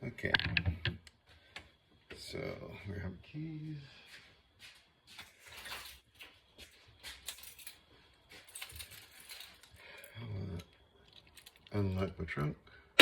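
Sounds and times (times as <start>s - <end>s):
keys jangling: 7.0s - 10.1s.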